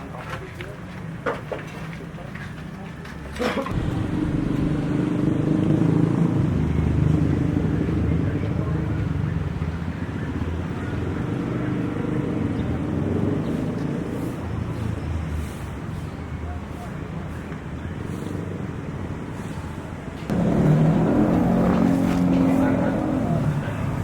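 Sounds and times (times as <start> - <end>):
motor running with low rumble: 3.7 - 8.6.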